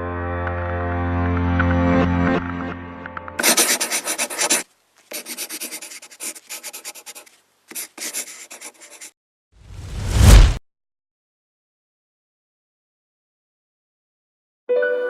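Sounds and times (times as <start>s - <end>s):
music: 0.0s - 3.4s, 14.7s - 15.0s
scratchy rubbing and scraping: 3.4s - 9.2s.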